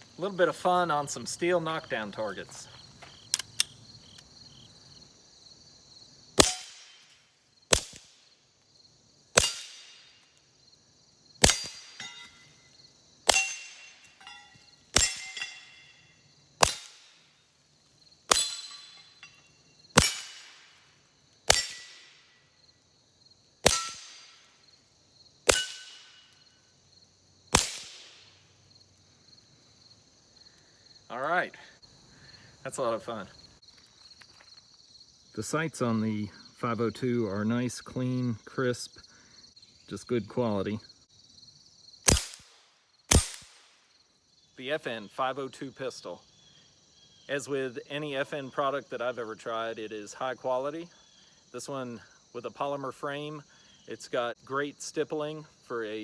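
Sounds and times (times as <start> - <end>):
crickets chirping: 0.0 - 56.0
pistol shots: 6.4 - 7.1, 7.7 - 8.2, 9.4 - 10.0, 11.4 - 12.2, 14.9 - 15.5, 16.6 - 17.2, 18.3 - 19.0, 19.9 - 20.8, 21.5 - 22.2, 23.6 - 24.5, 25.5 - 26.2, 27.5 - 28.3, 42.1 - 43.7
steel target ringing: 9.4 - 10.1, 11.4 - 12.6, 13.3 - 16.0, 18.3 - 20.7, 21.5 - 22.2, 23.6 - 24.5, 25.5 - 26.3.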